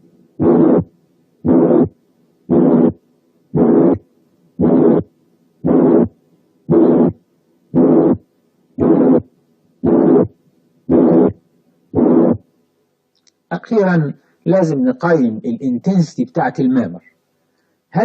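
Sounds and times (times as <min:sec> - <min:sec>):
heartbeat with harsh murmur: 0:00.4 - 0:12.5.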